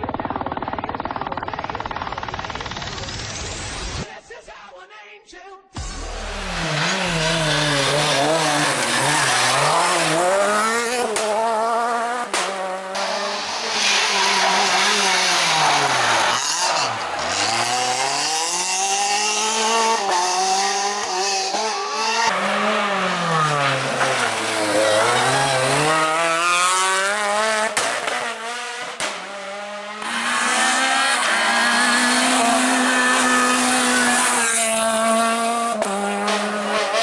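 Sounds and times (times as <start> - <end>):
rally car engine revving: 5.8 - 37.0.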